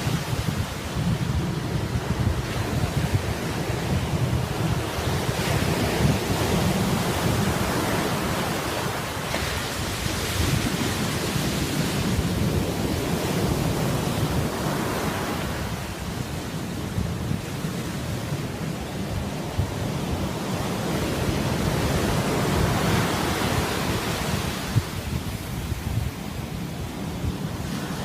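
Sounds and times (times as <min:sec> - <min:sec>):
surf breaking on beach: 0:00.0 - 0:28.0
wind buffeting microphone: 0:00.0 - 0:28.0.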